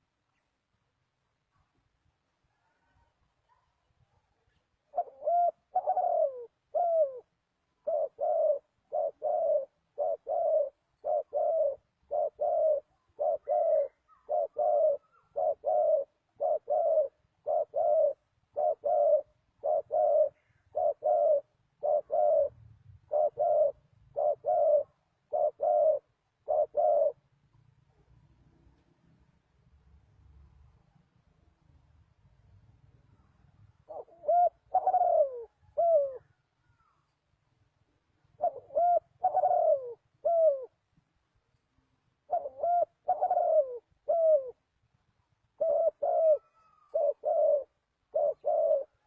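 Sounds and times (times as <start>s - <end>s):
dove cooing: 4.4s - 27.3s, 33.8s - 37.1s, 38.2s - 40.8s, 42.2s - 44.6s, 45.5s - 49.0s.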